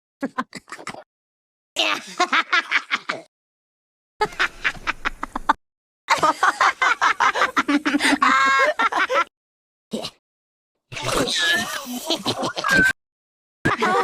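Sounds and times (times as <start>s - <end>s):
cartoon character laughing: 11.5s - 13.0s, 13.7s - 14.0s.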